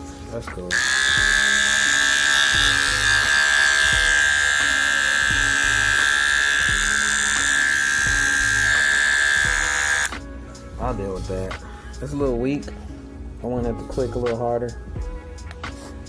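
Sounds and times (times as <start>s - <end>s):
hair clipper buzzing: 0.7s - 10.2s.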